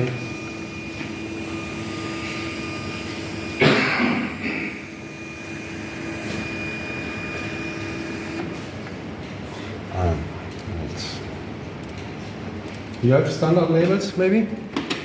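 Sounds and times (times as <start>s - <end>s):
held electronic tones: 0.0s - 8.6s
printer motor whirring: 0.0s - 9.2s.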